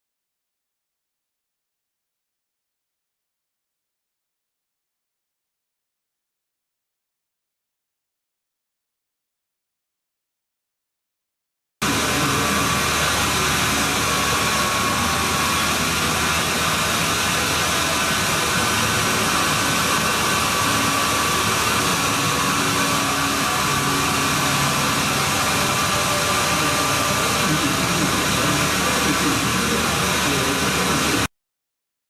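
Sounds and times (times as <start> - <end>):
power sander running: 11.8 - 31.3.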